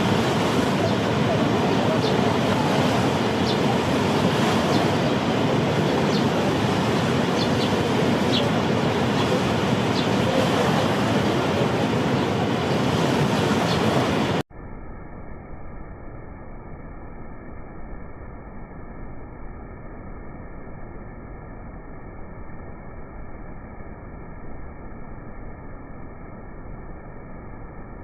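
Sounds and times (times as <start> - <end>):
rush of falling water: 0.0 - 14.4
muffled sound: 0.0 - 28.0.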